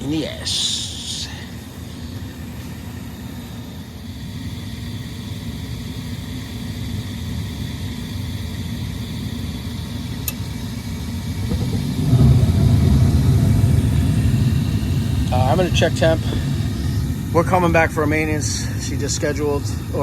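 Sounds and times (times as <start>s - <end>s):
deep furnace rumble: 0.0s - 20.0s
furnace motor hum: 0.0s - 20.0s
furnace igniter click: 10.2s - 10.5s.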